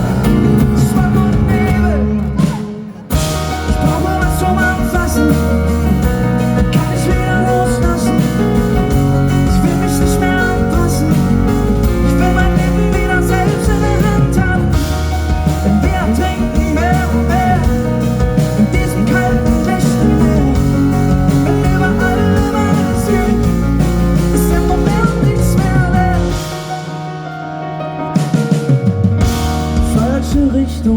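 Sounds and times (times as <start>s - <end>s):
person singing: 0.0s - 27.1s, 29.6s - 30.9s
strummed acoustic guitars: 0.0s - 27.1s.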